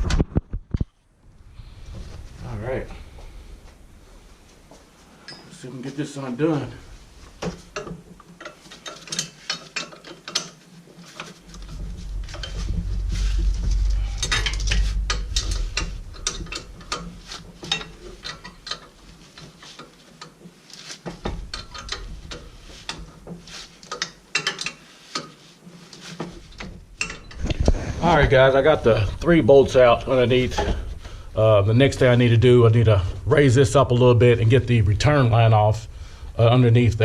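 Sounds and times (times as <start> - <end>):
low rumble: 11.4 - 19.2, 26.8 - 37.0.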